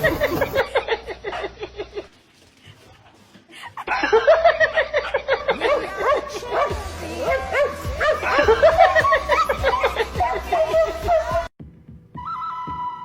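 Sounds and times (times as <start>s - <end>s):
person laughing: 0.0s - 2.2s, 3.5s - 6.7s, 8.0s - 11.4s.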